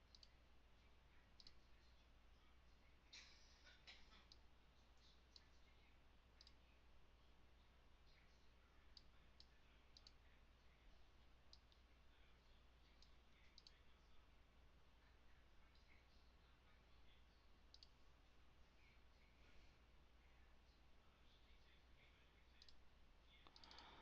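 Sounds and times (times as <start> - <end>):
computer mouse clicks: 0.0 - 0.4, 1.4 - 1.6, 6.4 - 6.6, 8.9 - 10.2, 13.0 - 13.8, 17.7 - 18.0, 22.6 - 22.8, 23.4 - 24.0
low steady hum: 0.0 - 24.0.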